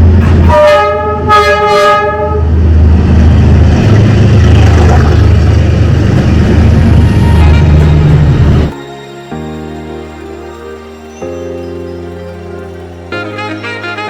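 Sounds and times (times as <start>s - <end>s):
train rumbling past: 0.0s - 14.0s
train horn blast: 0.2s - 2.6s, 12.2s - 14.0s.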